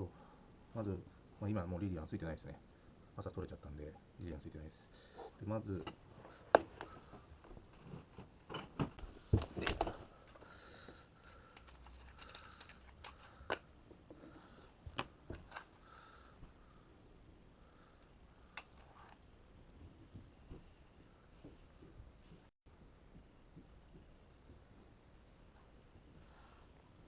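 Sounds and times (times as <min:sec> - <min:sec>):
faint background noise: 0:00.0 - 0:27.0
small objects clicking and knocking: 0:11.5 - 0:13.7.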